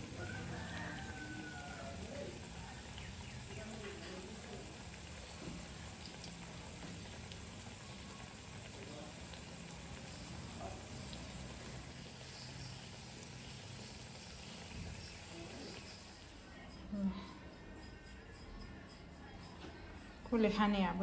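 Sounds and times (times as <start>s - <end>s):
food deep-frying in oil: 0.0s - 16.6s.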